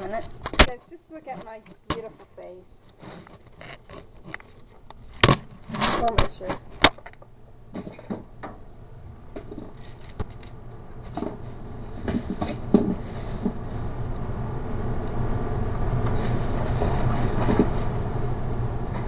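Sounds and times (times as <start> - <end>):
low rumble: 8.7 - 19.0.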